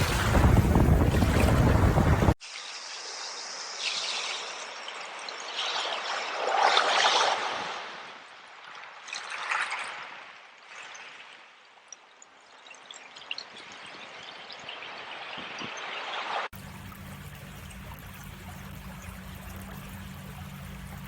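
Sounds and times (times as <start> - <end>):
waves and wind: 0.0 - 16.5
water trickling and splashing: 0.0 - 21.0.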